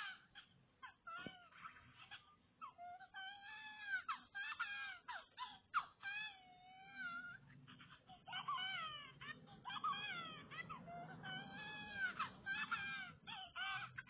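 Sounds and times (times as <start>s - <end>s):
high-pitched whimpering and whining: 0.0s - 14.0s.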